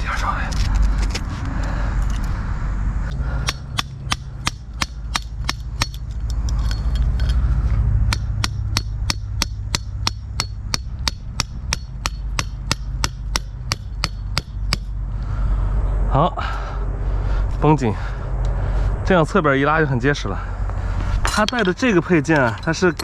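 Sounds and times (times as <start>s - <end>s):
wind rumble on microphone: 0.0s - 4.8s
hammer driving tent stake: 3.1s - 7.3s, 8.1s - 14.9s.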